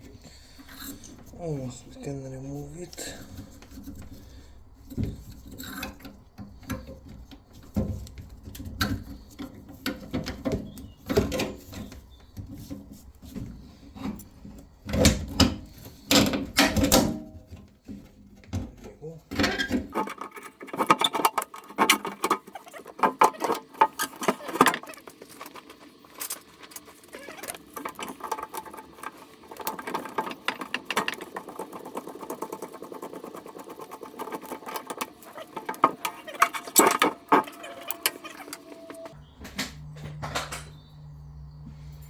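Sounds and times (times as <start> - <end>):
steady low hum: 35.6 - 42.0.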